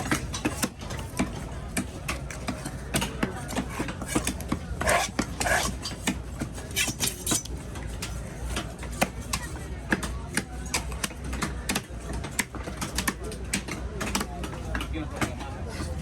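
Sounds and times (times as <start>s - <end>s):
knife scraping: 3.5s - 7.5s.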